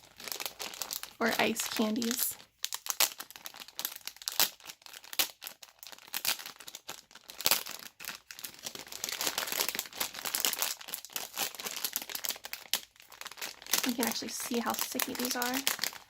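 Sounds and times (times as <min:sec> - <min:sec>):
plastic packaging crinkling: 0:00.0 - 0:16.0.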